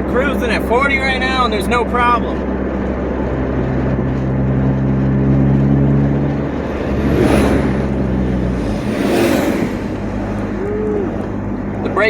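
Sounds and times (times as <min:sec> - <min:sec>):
car engine from inside: 0:04.8 - 0:11.1
brief rushing noises: 0:06.4 - 0:10.7.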